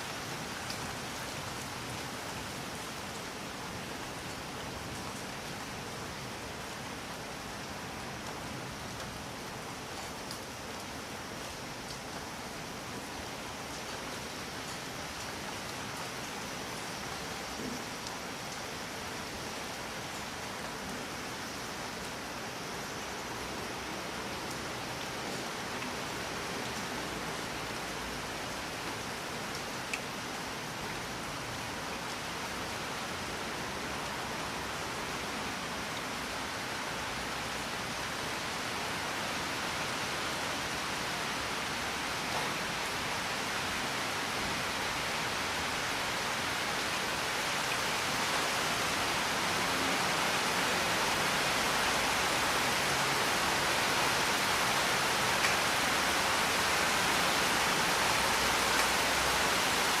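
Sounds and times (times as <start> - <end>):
heavy rain: 0.0 - 60.0.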